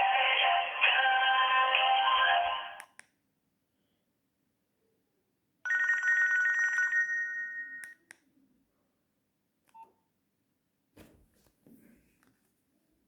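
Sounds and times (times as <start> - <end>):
mobile phone ringtone trilling: 5.7 - 7.8.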